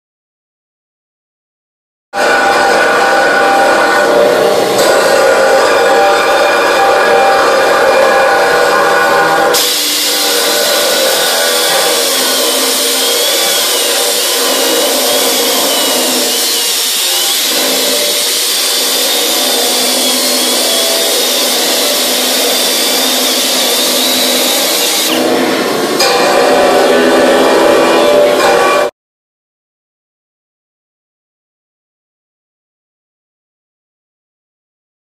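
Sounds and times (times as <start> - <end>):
die grinder high whine: 2.2 - 28.9
wire brush scrubbing metal: 4.7 - 26.2.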